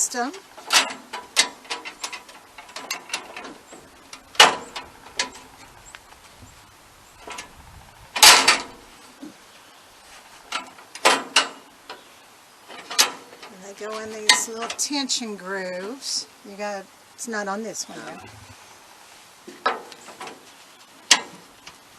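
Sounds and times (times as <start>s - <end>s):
metallic clanks and clicks: 0.6s - 5.7s, 8.2s - 8.8s, 12.7s - 13.6s.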